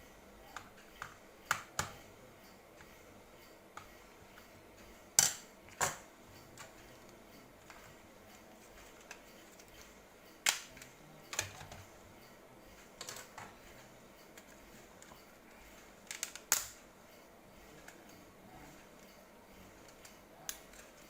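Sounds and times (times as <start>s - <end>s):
hard plastic clicks and taps: 0.6s - 2.0s.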